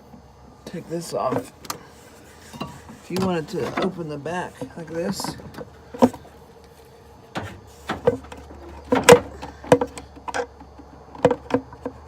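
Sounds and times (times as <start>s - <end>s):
clinks and knocks of car parts: 2.4s - 6.4s, 7.3s - 12.0s.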